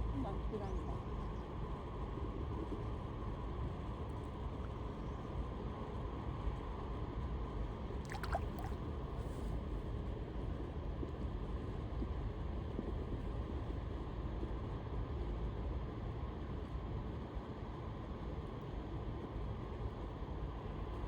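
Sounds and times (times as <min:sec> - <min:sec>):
river water rushing: 0:08.1 - 0:08.8.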